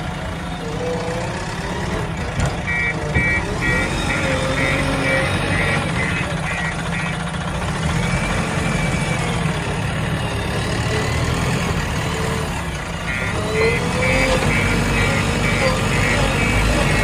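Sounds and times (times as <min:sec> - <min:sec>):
diesel engine running: 0:00.0 - 0:17.0
reversing alarm beeping: 0:02.6 - 0:07.2, 0:07.8 - 0:11.3, 0:13.0 - 0:17.0.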